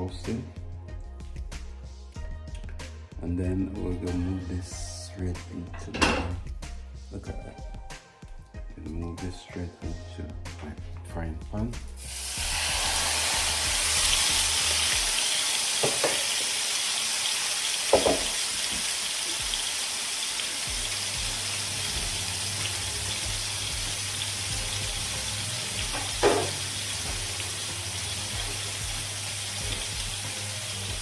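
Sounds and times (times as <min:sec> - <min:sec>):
meat sizzling in a frying pan: 0:12.0 - 0:31.0.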